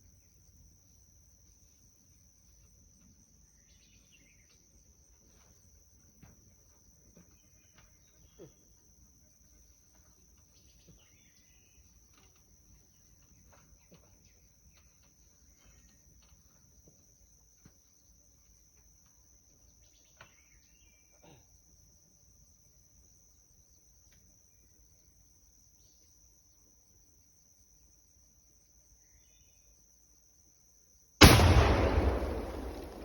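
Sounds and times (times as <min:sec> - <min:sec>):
insects droning: 0:00.0 - 0:33.0
loud explosion: 0:31.2 - 0:33.0.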